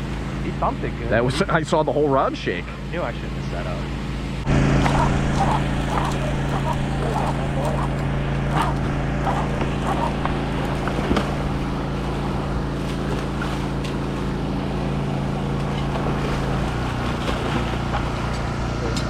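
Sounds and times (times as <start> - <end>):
engine drone: 0.0 - 19.0
wind: 0.0 - 19.0
surf: 4.4 - 19.0.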